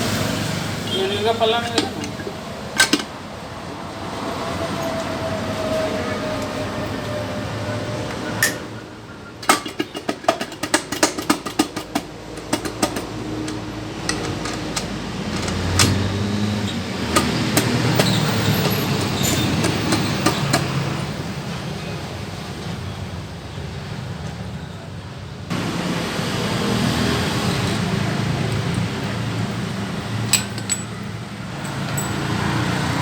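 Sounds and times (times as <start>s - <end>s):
metal tools clinking on engine parts: 0.9s - 3.3s, 8.1s - 21.1s, 27.6s - 32.9s.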